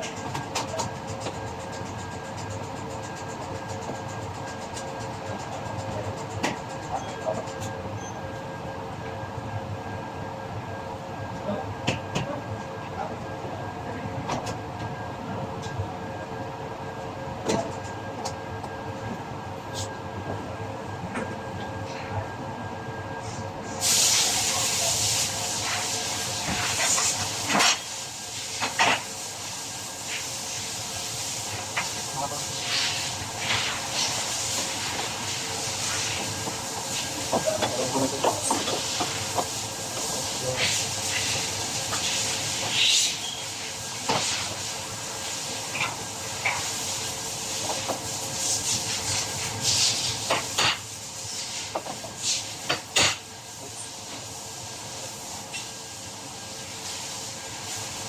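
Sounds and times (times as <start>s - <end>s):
steady hiss: 23.8s - 58.0s.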